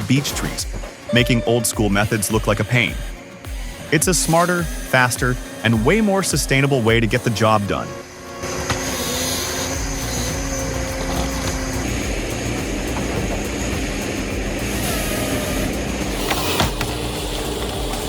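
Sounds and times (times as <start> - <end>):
diesel engine running: 9.4 - 18.0.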